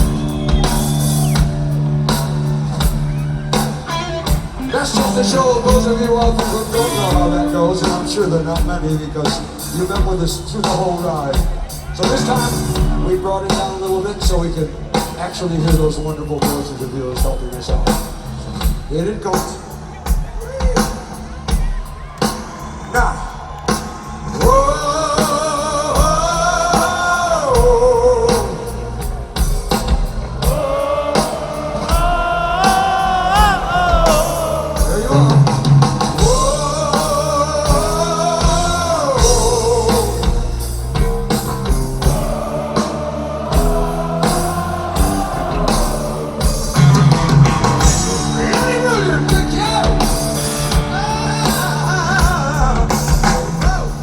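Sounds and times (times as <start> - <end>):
bass guitar: 0.0 - 54.0
drums: 0.0 - 54.0
man singing with vibrato: 4.2 - 17.6, 24.4 - 29.2, 30.4 - 54.0.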